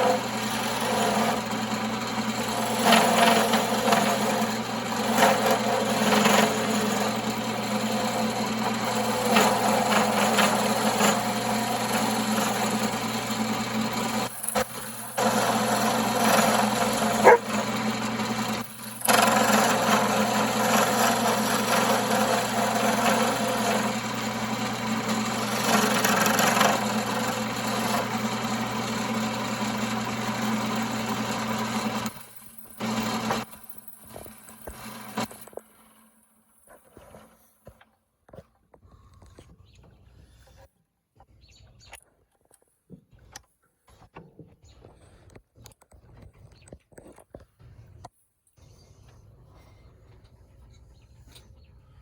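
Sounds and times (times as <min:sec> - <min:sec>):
wood lathe motor hum: 0:00.0 - 0:37.4
tool scraping spinning wood: 0:00.0 - 0:38.4.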